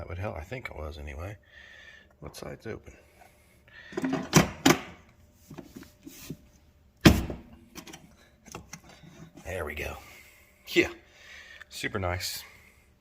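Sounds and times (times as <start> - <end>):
vent knocking into frame: 7.0 - 7.5.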